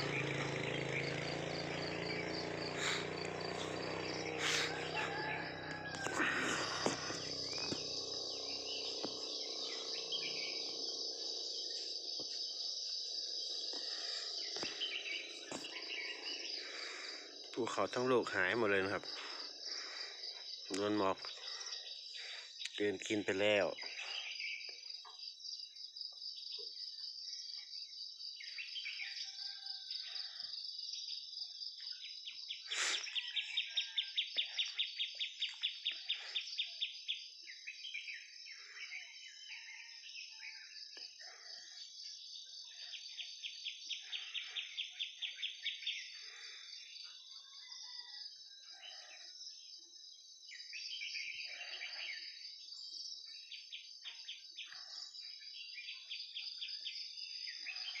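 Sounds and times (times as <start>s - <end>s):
fast pulsing trill: 0.0s - 12.0s
bird calls: 0.0s - 25.3s, 31.8s - 49.4s, 50.5s - 58.0s
insects droning: 0.0s - 58.0s.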